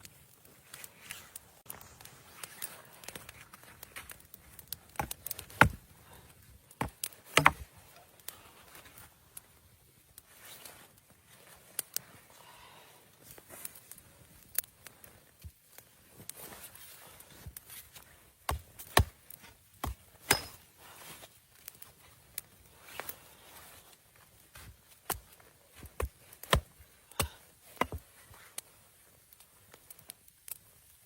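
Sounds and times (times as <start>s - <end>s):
sharp knocks and taps: 7.4s - 7.6s.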